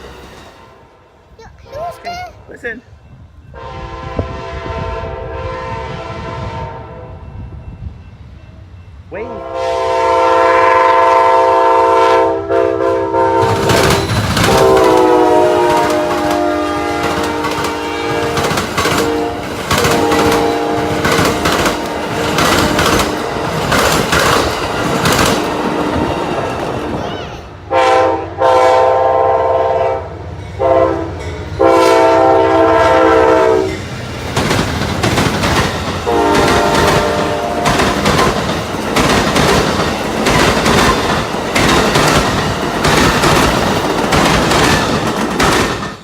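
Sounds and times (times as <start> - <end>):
train rumble: 0.0 - 46.0
locomotive air horn blasts: 3.5 - 7.2, 9.2 - 23.6, 27.7 - 33.8, 36.1 - 37.8
train wheels clicking over rail joints: 13.4 - 27.1, 33.7 - 46.0.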